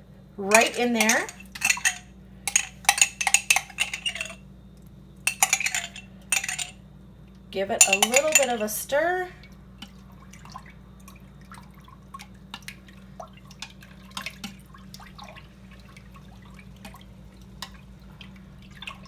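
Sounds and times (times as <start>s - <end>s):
milk being stirred: 0.5s - 4.4s, 5.3s - 6.7s, 7.8s - 8.8s.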